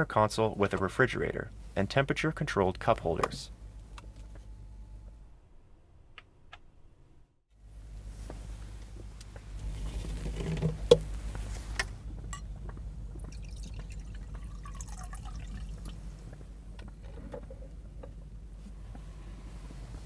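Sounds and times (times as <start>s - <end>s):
steady low hum: 0.0s - 20.0s
drink pouring into glass: 13.2s - 16.0s.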